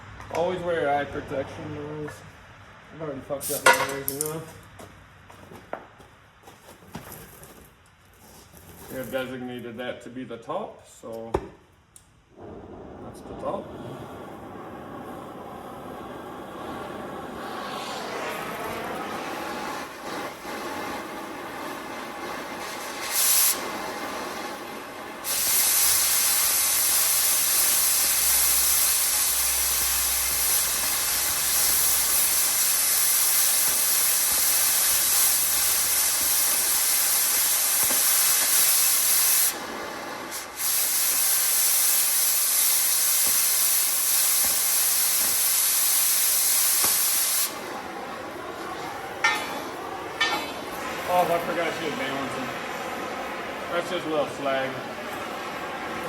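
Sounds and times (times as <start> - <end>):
cutting torch hissing: 3.3 - 4.3, 12.3 - 56.0.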